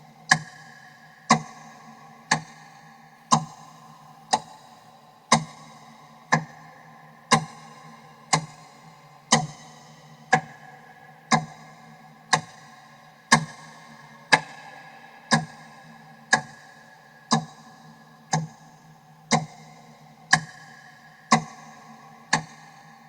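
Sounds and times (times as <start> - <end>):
clock ticking: 1.3 - 1.6, 2.3 - 2.5, 3.3 - 3.6, 19.3 - 19.6, 21.3 - 22.7.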